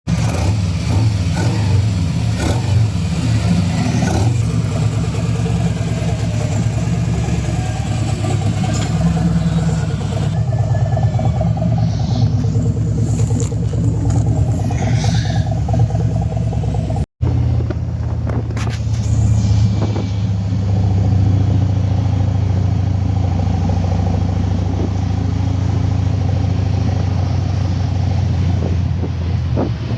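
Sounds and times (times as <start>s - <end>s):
motorcycle engine running: 0.1s - 19.2s.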